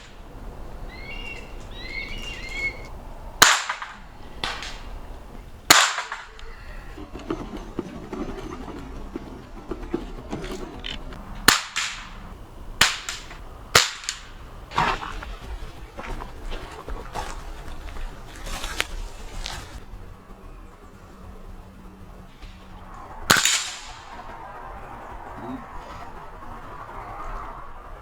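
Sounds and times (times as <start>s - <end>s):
air rifle shots: 3.4s - 5.1s, 5.7s - 6.9s, 11.4s - 15.1s, 23.3s - 24.3s.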